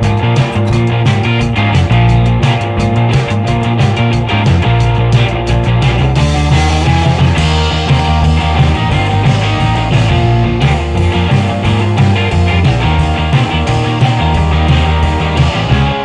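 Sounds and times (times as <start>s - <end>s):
rock music with guitar and bass: 0.0s - 16.0s.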